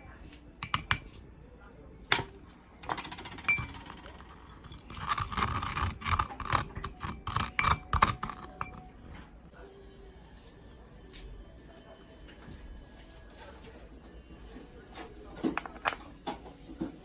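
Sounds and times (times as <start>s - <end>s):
utensil clinking on bowl: 0.6s - 1.2s, 3.2s - 9.3s
utensil scraping a bowl: 3.4s - 9.3s.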